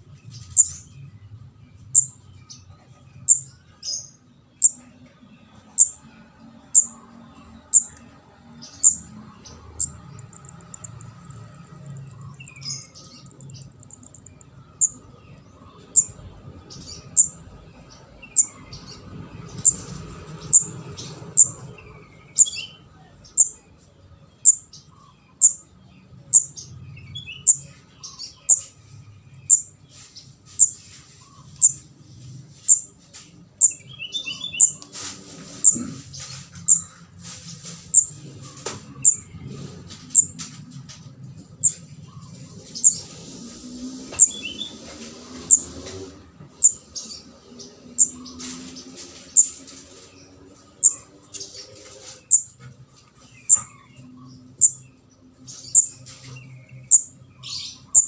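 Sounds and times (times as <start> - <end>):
faint lower bird chirps: 1.8 - 6.1.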